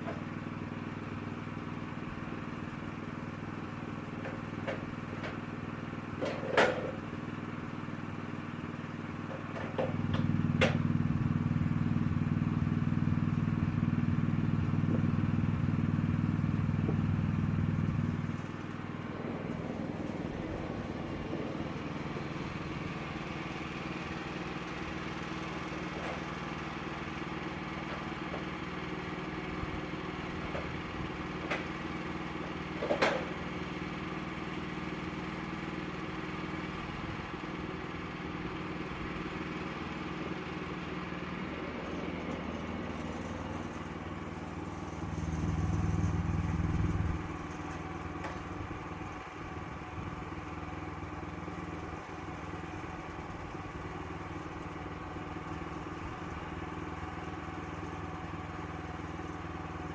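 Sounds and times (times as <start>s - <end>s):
sawmill engine running: 0.0s - 59.9s
low rumble: 14.2s - 23.8s.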